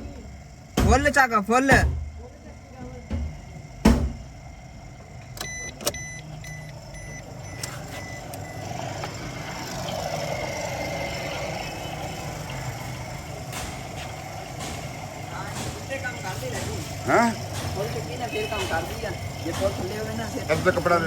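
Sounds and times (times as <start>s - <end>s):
car engine humming: 0.0s - 21.0s
electronic beeps: 5.4s - 8.8s.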